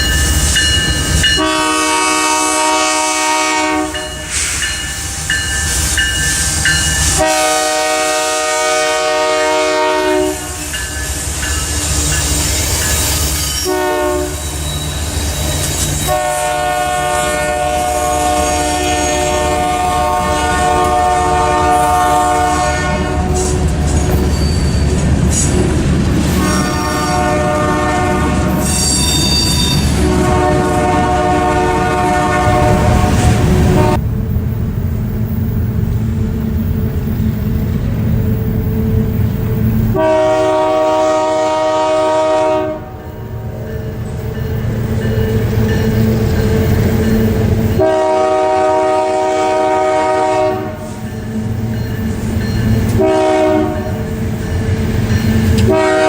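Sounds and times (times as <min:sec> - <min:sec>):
train wheels rumbling on rails: 0:00.0 - 0:56.0
locomotive air horn blasts: 0:01.4 - 0:04.7, 0:07.0 - 0:10.8, 0:13.6 - 0:14.5, 0:16.0 - 0:23.6, 0:26.4 - 0:28.8, 0:29.6 - 0:34.0, 0:39.9 - 0:43.1, 0:47.8 - 0:51.0, 0:52.9 - 0:54.1, 0:55.6 - 0:56.0.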